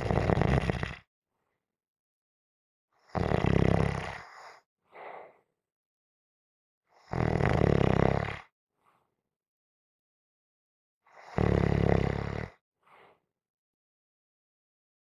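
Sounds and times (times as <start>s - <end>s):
person snoring: 0.0s - 1.1s, 3.1s - 4.6s, 7.0s - 8.5s, 11.1s - 12.6s
soft breath: 4.2s - 5.5s, 12.8s - 13.3s.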